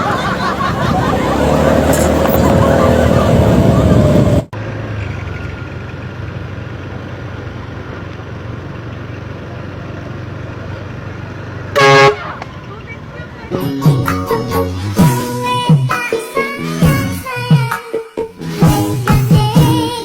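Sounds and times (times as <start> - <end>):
vehicle passing: 0.0 - 15.1
engine rumble: 0.0 - 15.9.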